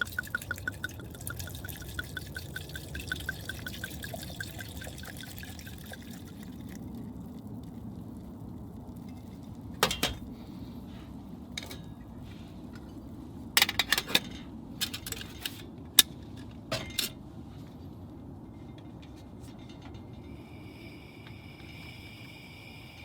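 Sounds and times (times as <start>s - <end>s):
dishes and metal utensils clinking: 9.8s - 10.3s, 11.6s - 12.0s, 13.6s - 15.6s, 16.7s - 17.2s.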